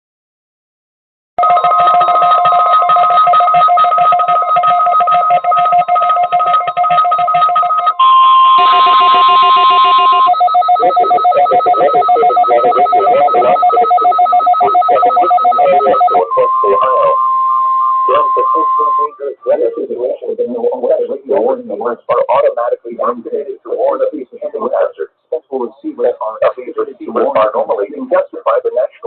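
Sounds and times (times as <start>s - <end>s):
pulsing electronic alert tones: 1.4s - 19.8s
steady clean alert tone: 4.2s - 19.8s.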